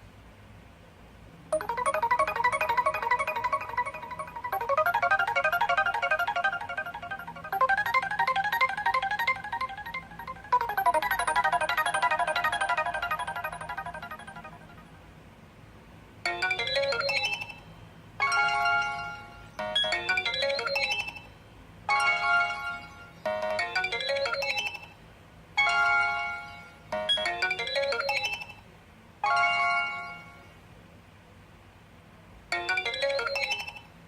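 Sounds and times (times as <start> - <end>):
phone ringtone melody: 1.5 - 14.9, 16.3 - 21.3, 23.3 - 24.9, 27.0 - 28.6, 32.5 - 33.9.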